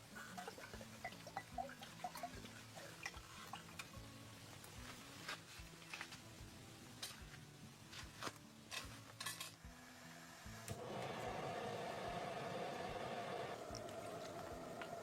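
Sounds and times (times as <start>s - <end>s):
steady hiss: 10.4s - 15.0s.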